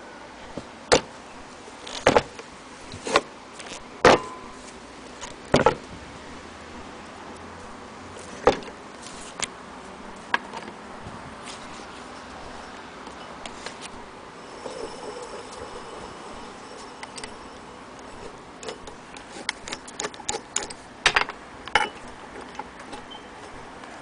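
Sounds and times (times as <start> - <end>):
sewing machine metal parts clicking: 18.6 - 23.6.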